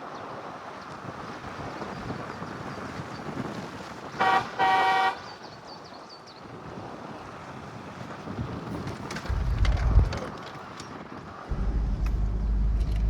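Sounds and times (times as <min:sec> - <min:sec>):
road and wind noise: 0:00.0 - 0:13.0
vehicle horn honking: 0:04.2 - 0:05.2.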